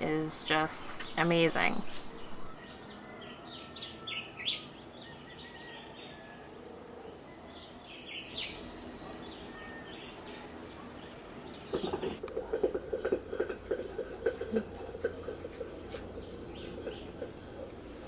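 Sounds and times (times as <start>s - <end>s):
birds chirping: 0.0s - 13.5s, 14.1s - 18.0s
insect drone: 2.5s - 13.4s.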